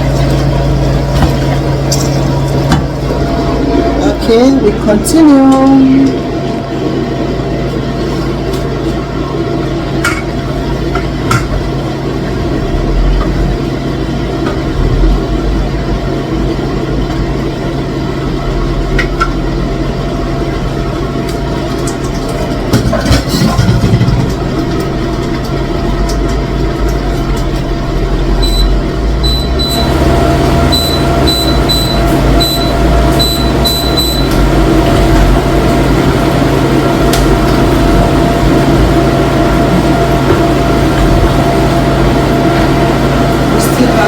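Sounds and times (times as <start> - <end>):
mechanical hum with low drone: 0.0 - 44.0
short high-pitched beeps: 28.4 - 30.0, 30.7 - 34.3.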